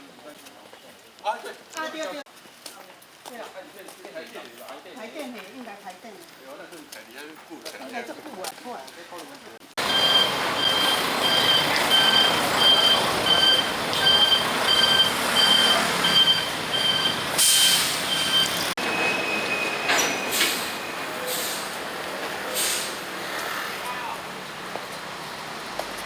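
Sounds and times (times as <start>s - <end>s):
smoke alarm beeping: 9.8s - 20.2s.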